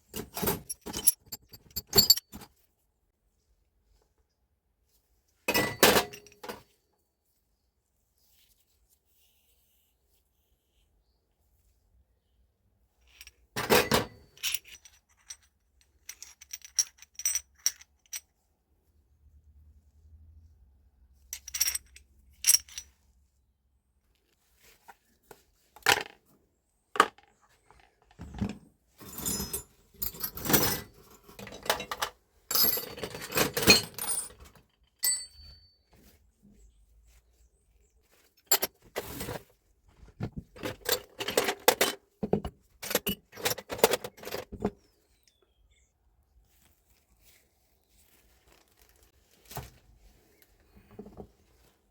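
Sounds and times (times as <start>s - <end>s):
metal parts and tools clinking: 0.0s - 2.6s, 5.5s - 6.7s, 13.1s - 18.3s, 21.3s - 23.0s, 27.0s - 35.9s, 38.4s - 39.5s, 40.4s - 45.4s.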